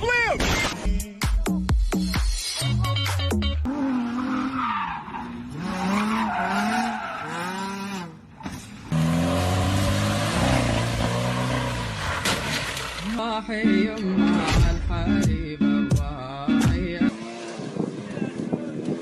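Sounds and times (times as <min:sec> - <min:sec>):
car engine revving: 0:03.6 - 0:13.0.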